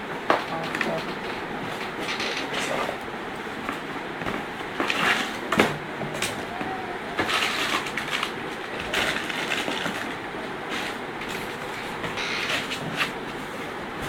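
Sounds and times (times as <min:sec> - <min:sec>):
packaging rustling and scraping: 0:04.8 - 0:05.5, 0:07.2 - 0:13.7.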